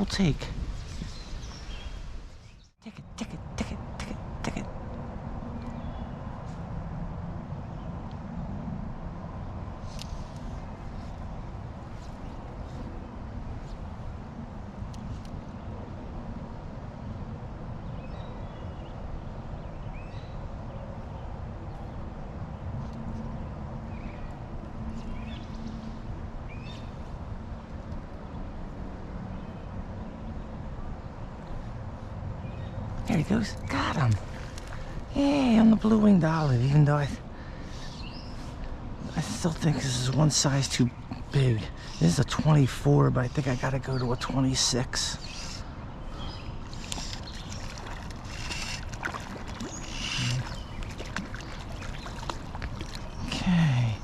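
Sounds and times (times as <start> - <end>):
stream flowing: 23.5 - 54.0
creek water running: 32.9 - 54.0
bird chirps: 37.6 - 54.0
water splashes: 46.4 - 54.0.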